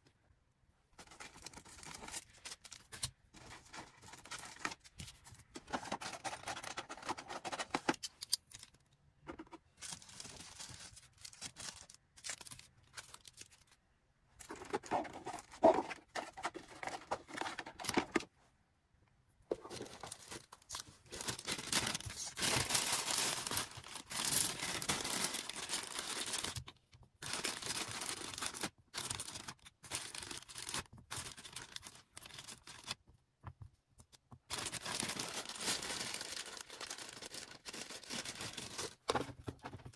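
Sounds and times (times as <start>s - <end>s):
packaging crinkling and rustling: 9.4s - 13.8s, 14.4s - 18.3s, 19.5s - 33.0s, 34.4s - 39.9s
packaging tearing: 19.7s - 26.6s, 27.2s - 33.0s, 34.5s - 39.1s.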